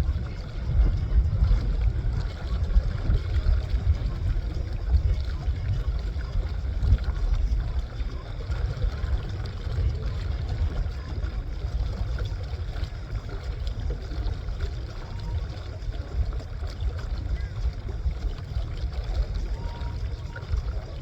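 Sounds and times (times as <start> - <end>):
water washing along hull: 0.0 - 21.0
wind buffeting microphone: 0.0 - 21.0.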